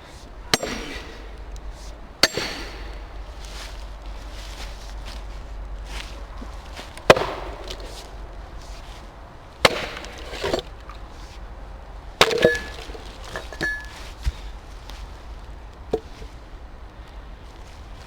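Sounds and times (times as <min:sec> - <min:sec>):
axe chopping wood: 0:00.5 - 0:03.2, 0:07.0 - 0:08.1, 0:09.6 - 0:10.7, 0:12.2 - 0:14.5.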